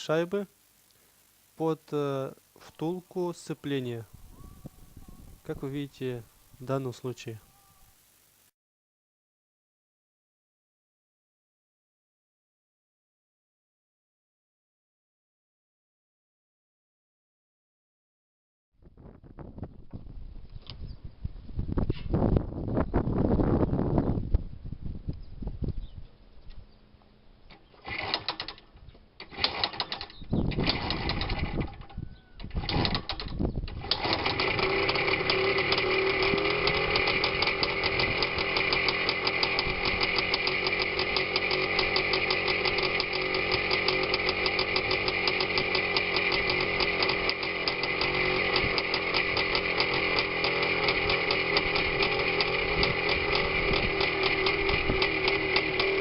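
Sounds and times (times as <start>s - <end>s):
two-stroke motorcycle engine running: 27.8s - 28.5s, 29.2s - 56.0s.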